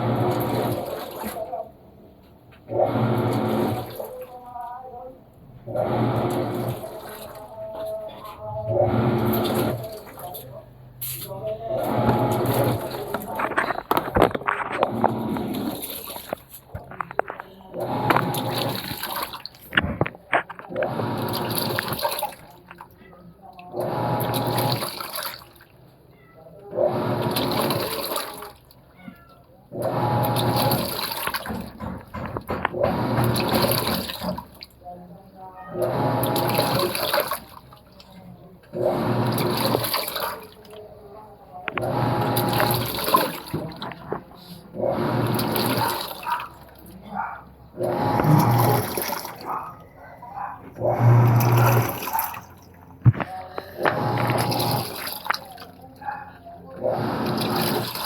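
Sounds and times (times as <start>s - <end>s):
low motor hum: 0.0s - 22.7s, 38.0s - 58.0s
washing machine churning water: 0.0s - 58.0s.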